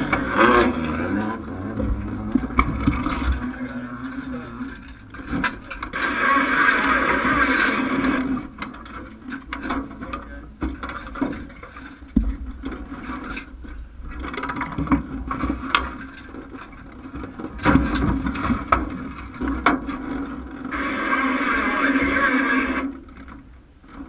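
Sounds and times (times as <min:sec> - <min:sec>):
low rumble: 0:00.0 - 0:09.2
sharp metallic clicks and knocks: 0:00.0 - 0:20.4.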